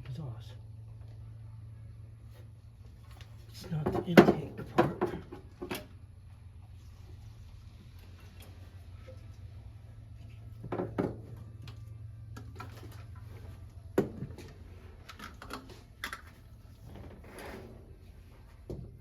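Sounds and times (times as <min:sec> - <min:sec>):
steady low hum: 0:00.0 - 0:19.0
tools knocking and clanking: 0:03.7 - 0:05.9, 0:10.6 - 0:11.8.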